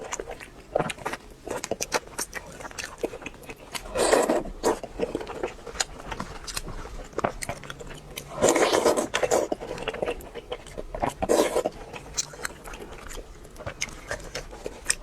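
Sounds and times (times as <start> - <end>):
chewing: 0.0 - 15.0
crackles of crispy crust: 0.0 - 15.0
crunchy bite: 3.8 - 15.0.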